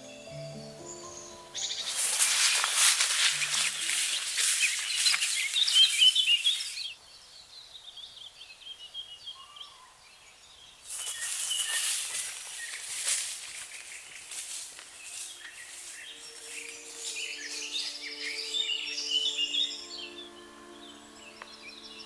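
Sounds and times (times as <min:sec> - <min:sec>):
songbirds singing: 0:00.0 - 0:22.0
loud crackling hiss: 0:01.6 - 0:07.0, 0:10.8 - 0:19.8.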